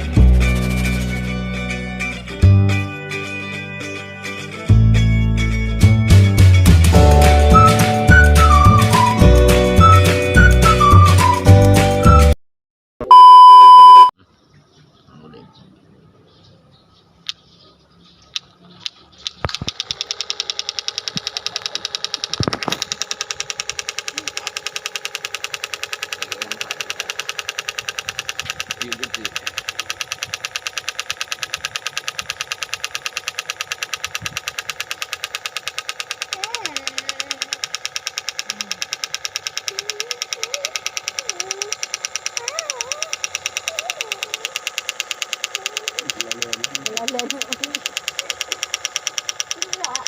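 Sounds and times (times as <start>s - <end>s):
model engine clattering: 18.4s - 50.0s.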